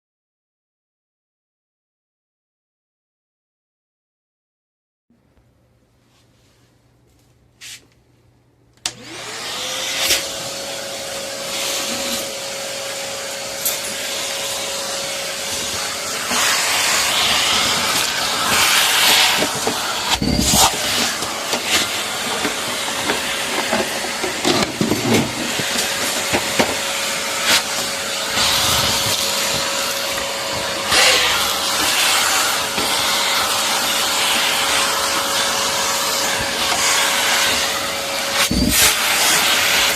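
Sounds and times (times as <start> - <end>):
vacuum cleaner motor whining: 8.8 - 39.9.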